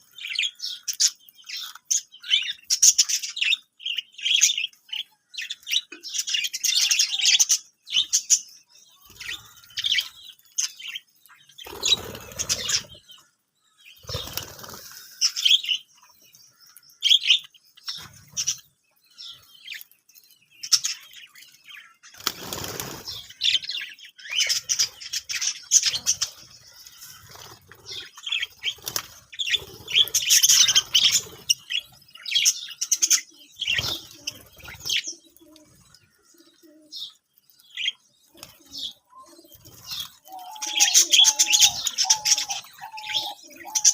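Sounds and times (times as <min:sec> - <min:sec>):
wings flapping: 0:11.6 - 0:12.9, 0:14.0 - 0:15.1, 0:22.2 - 0:23.3, 0:27.2 - 0:31.8
budgerigars chirping: 0:11.6 - 0:13.2, 0:23.0 - 0:35.2, 0:39.8 - 0:43.9.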